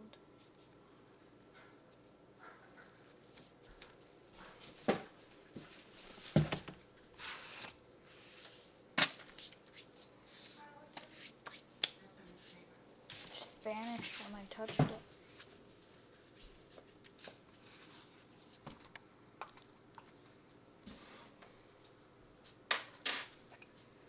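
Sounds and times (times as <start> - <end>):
rustling or hissing bursts: 7.2 - 8.7.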